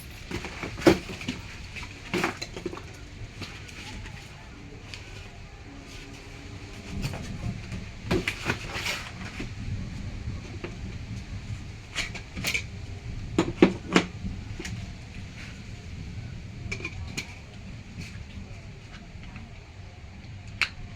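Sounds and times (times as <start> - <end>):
metallic clink: 0.0 - 0.5.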